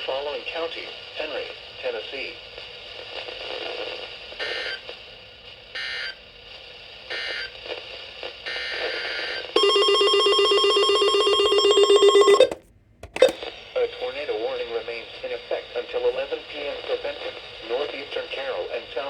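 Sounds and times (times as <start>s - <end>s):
data tone bursts: 9.6s - 12.6s.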